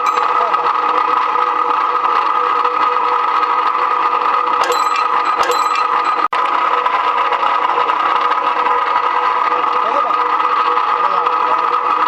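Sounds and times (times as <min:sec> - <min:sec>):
electric machine motor running: 0:00.0 - 0:12.0
short metallic clinks: 0:04.6 - 0:06.3.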